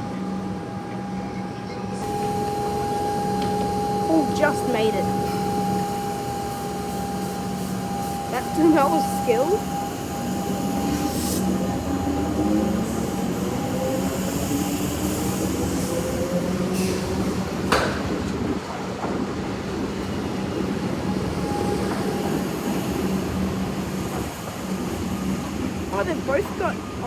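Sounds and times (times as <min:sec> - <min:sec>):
electric train motors whining: 0:01.9 - 0:17.7.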